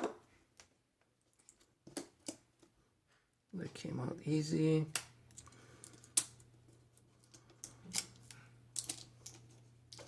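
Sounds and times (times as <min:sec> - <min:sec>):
small parts clicking: 0:05.0 - 0:06.4, 0:07.2 - 0:10.0.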